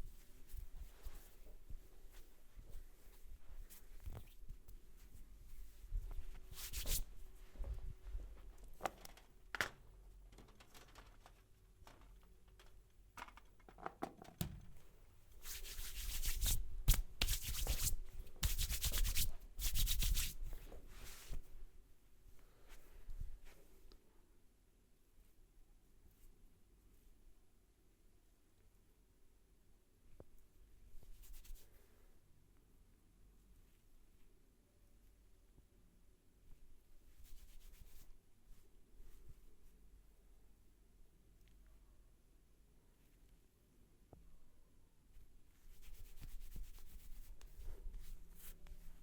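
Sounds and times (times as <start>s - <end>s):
soft rustles: 0.0s - 13.4s, 14.7s - 24.2s, 30.1s - 32.1s, 36.4s - 40.2s, 45.1s - 49.0s
hands rubbing hair and scalp: 0.1s - 8.3s, 15.4s - 21.5s, 31.1s - 31.7s, 45.6s - 49.0s.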